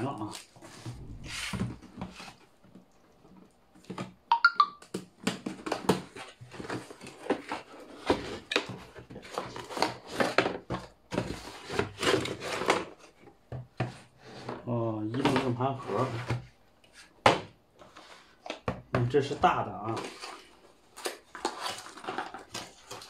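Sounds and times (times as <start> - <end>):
packaging tearing and crinkling: 20.1 - 23.0.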